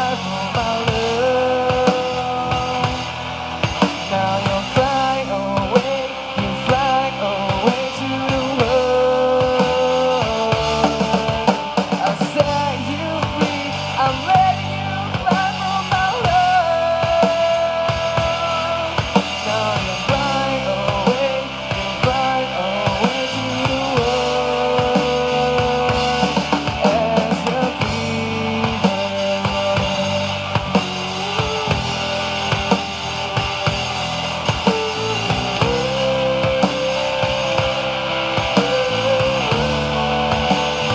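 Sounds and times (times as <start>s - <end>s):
drum kit: 0.0s - 40.9s
electric guitars: 0.0s - 40.9s
guitar lead with bending notes: 0.0s - 40.9s.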